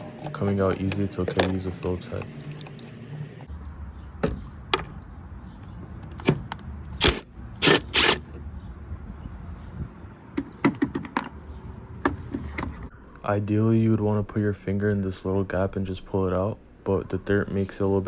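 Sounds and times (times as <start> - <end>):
short scraping rasps: 6.9 - 8.3.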